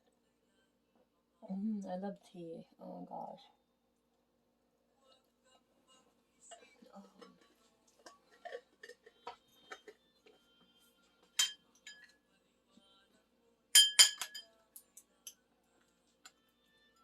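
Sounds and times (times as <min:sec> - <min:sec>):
utensil clinking against dishware: 0:11.3 - 0:12.2, 0:13.8 - 0:14.5.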